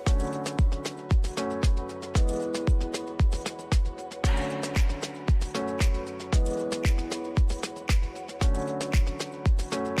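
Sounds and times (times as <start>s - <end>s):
music with kick drum beat: 0.0s - 10.0s.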